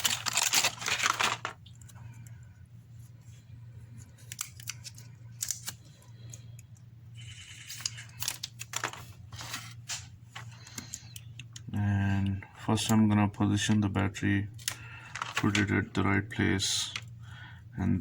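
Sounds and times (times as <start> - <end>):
low electrical hum: 0.0 - 18.0
small clicks taps and crinkles: 9.9 - 13.0, 14.6 - 15.6.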